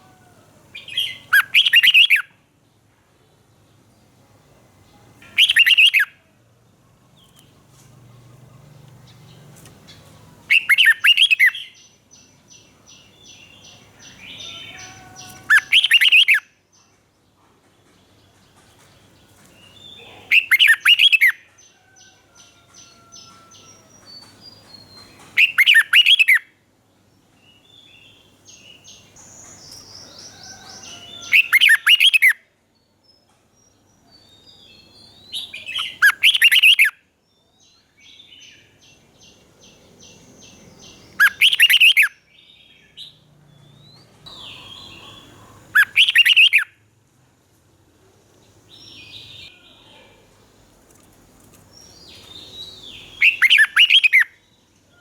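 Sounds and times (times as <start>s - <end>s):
bird singing liquid phrases: 0.7s - 2.4s, 4.8s - 6.2s, 8.2s - 16.6s, 19.6s - 21.5s, 24.8s - 26.5s, 27.5s - 32.5s, 34.1s - 39.4s, 40.0s - 46.7s, 51.8s - 54.6s.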